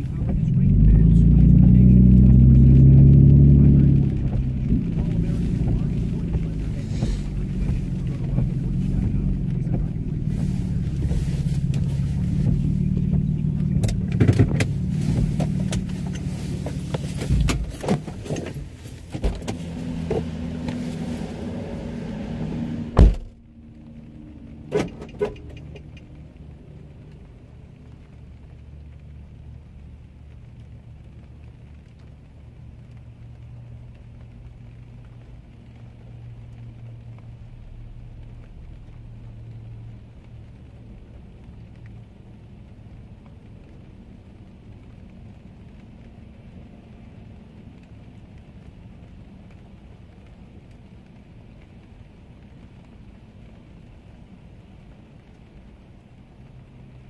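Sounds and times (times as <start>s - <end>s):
faint low hum: 0.0s - 55.5s
car engine rumbling: 0.0s - 57.0s
sharp thump: 22.9s - 23.3s.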